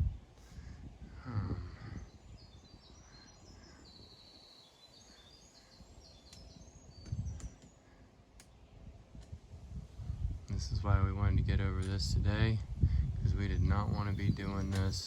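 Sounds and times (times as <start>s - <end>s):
songbird trilling and chirping: 1.4s - 7.8s, 13.4s - 15.0s.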